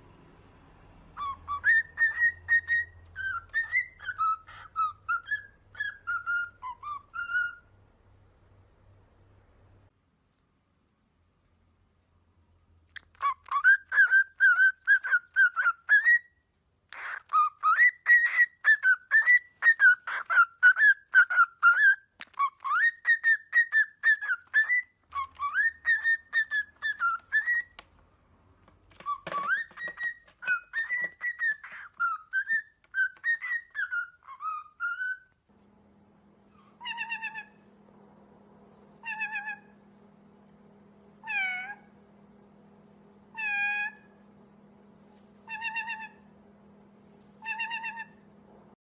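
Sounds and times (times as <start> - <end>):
parrot whistling: 1.2 - 7.7, 13.0 - 16.4, 17.0 - 27.8, 29.0 - 35.4, 36.5 - 37.7, 39.0 - 39.8, 41.2 - 41.9, 43.3 - 44.2, 45.4 - 46.3, 47.4 - 48.3
steady low hum: 35.5 - 48.8.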